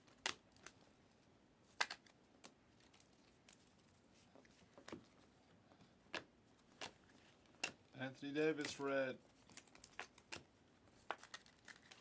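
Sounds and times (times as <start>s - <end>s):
trading cards clicking: 8.5s - 9.0s.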